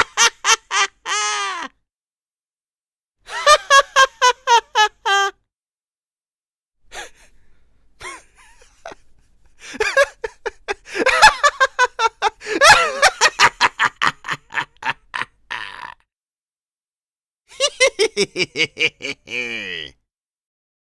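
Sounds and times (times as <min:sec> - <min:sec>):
maniacal laughter: 0:00.0 - 0:01.7, 0:03.3 - 0:05.4, 0:08.0 - 0:16.0, 0:17.5 - 0:20.0.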